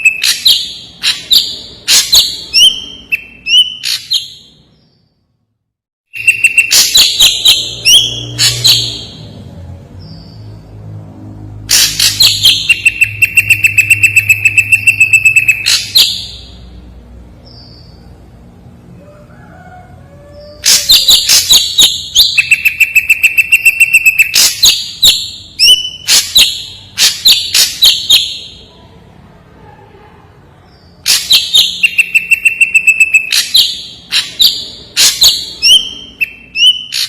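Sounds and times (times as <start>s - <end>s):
bird singing sharp trills: 6.1s - 9.4s, 11.7s - 16.6s, 20.6s - 28.7s, 30.7s - 37.0s.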